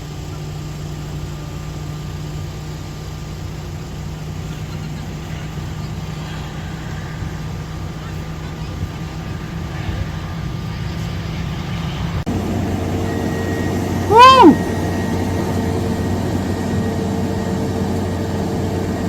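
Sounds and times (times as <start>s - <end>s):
voice-like sound: 14.1s - 14.6s.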